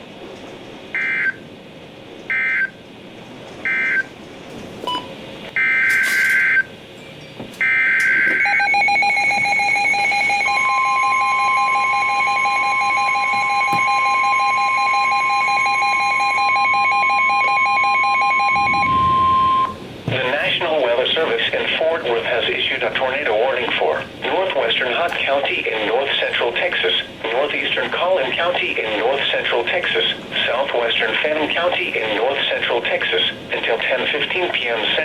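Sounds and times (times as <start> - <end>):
steady warning alarm tone: 0.9 - 1.4, 2.3 - 2.8, 3.6 - 4.1, 4.8 - 6.7, 7.6 - 35.0
pulsing electronic alarm beep: 1.0 - 1.4, 3.7 - 4.1, 4.9 - 6.7, 7.6 - 19.8
data burst chirps: 7.6 - 19.8.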